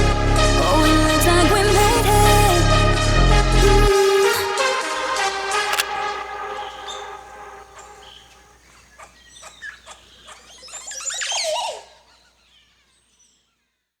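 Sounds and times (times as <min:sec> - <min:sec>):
sharp clicks: 0:05.1 - 0:06.5
birds squealing and warbling: 0:05.2 - 0:13.6.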